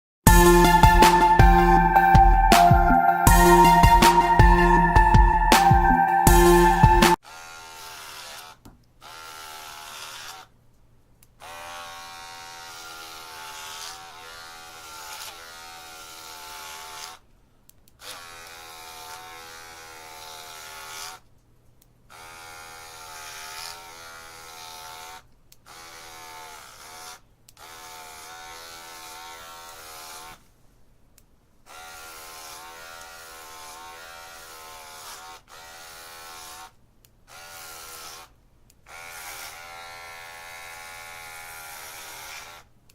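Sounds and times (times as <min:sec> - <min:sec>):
electric hair clippers buzzing: 0:07.3 - 0:10.4, 0:11.4 - 0:17.2, 0:18.0 - 0:21.1, 0:22.1 - 0:30.4, 0:31.7 - 0:38.3, 0:38.9 - 0:42.7.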